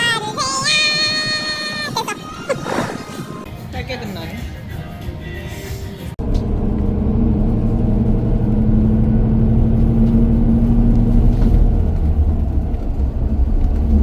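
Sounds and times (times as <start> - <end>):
engine hum: 6.0 - 14.0
vehicle rumble from inside: 6.1 - 14.0.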